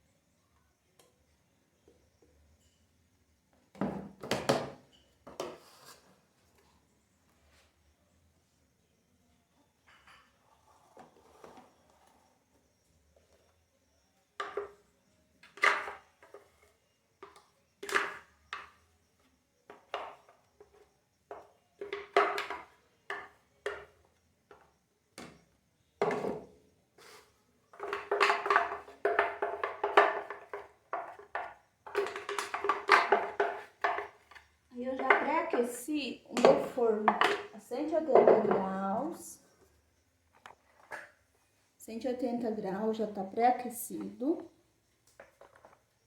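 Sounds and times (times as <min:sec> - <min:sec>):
utensils knocking and scraping: 0:26.0 - 0:39.1.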